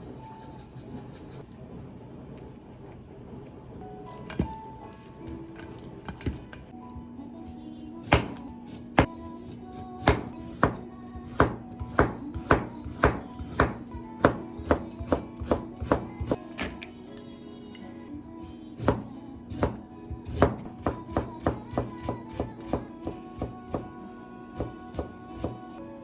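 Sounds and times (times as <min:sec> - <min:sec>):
soft background music: 0:03.8 - 0:26.0
knife chopping on cutting board: 0:08.0 - 0:16.8, 0:18.8 - 0:23.9, 0:24.6 - 0:25.6.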